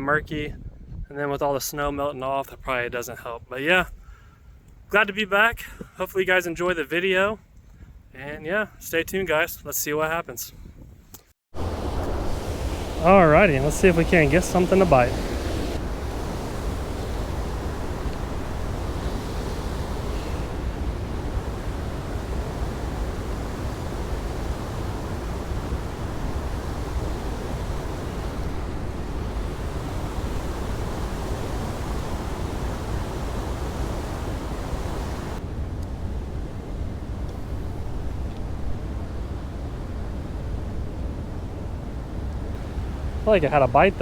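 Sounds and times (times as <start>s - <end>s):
wind rumble on microphone: 0.0s - 3.0s, 7.4s - 8.2s, 10.5s - 44.0s
river water rushing: 11.6s - 35.4s.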